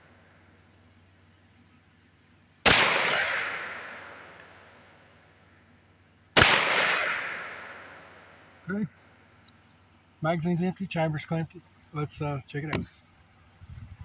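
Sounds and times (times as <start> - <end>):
pistol shots echoing: 2.7 - 4.7, 6.4 - 8.3.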